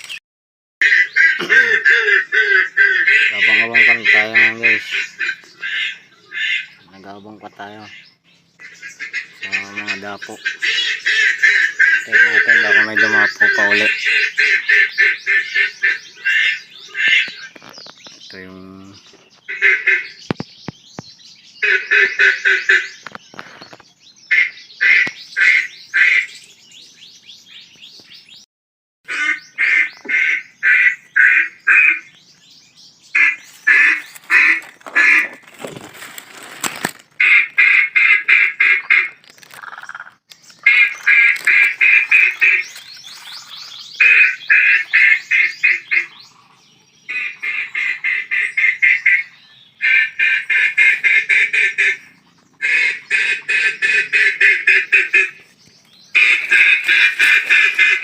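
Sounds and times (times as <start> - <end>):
ducks quacking: 0.8 - 17.8, 18.4 - 20.3, 21.6 - 23.6, 24.3 - 26.4, 29.1 - 32.2, 33.2 - 55.5, 56.1 - 58.0
rustling: 33.4 - 37.3, 40.4 - 44.0, 55.5 - 58.0.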